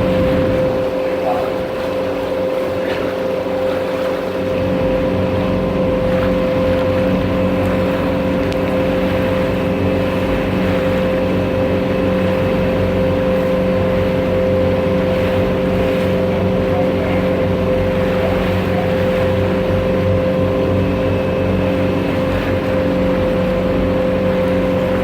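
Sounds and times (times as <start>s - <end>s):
wind noise: 0.0s - 1.8s
boat engine droning: 0.0s - 25.0s
rushing water: 0.0s - 25.0s.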